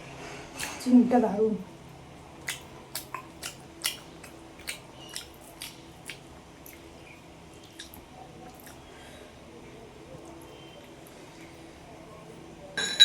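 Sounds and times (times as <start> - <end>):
chewing with wet mouth smacks: 2.3 - 9.0.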